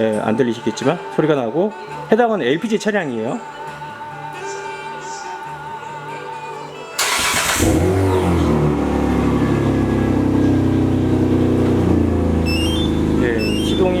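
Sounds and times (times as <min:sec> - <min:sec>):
engine starter cranking: 0:07.0 - 0:09.8
car engine idling: 0:07.0 - 0:14.0.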